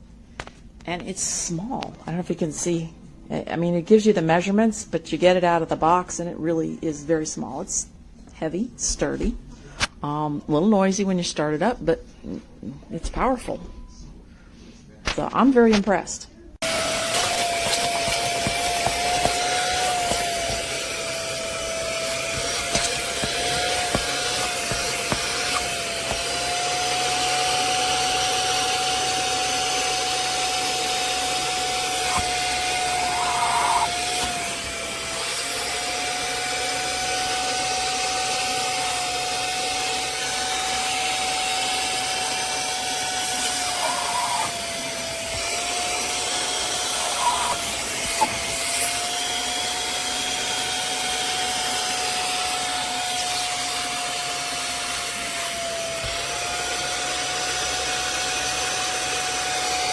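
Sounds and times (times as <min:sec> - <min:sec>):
spot cleaner suction motor whine: 0:16.6 - 0:59.9.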